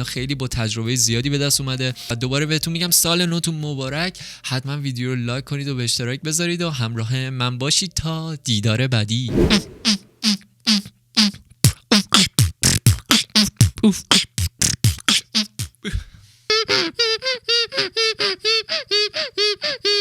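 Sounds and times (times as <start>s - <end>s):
beatboxing mouth percussion: 14.2s - 16.0s.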